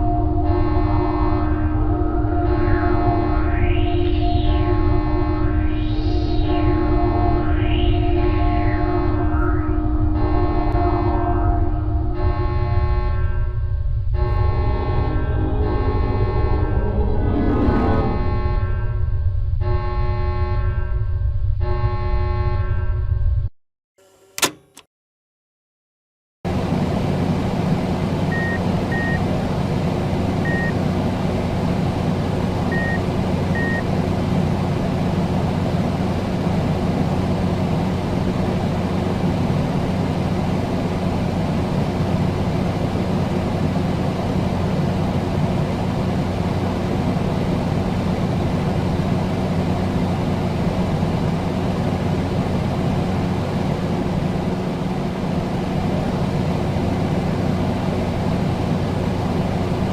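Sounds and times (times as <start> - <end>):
dense rumbling noise: 0.0 - 23.5
low droning hum: 0.0 - 23.5, 26.5 - 59.9.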